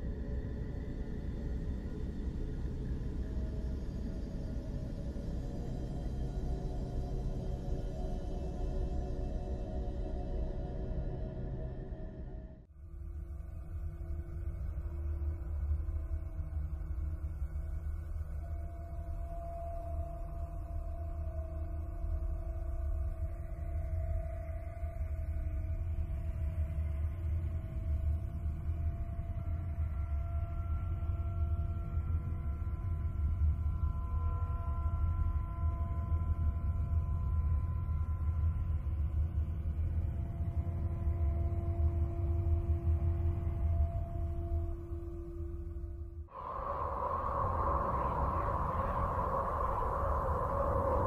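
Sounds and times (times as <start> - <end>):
faint lower tone: 29.3 - 51.0
faint drawn-out tones: 46.3 - 51.0
steady deep rumble: 46.3 - 51.0.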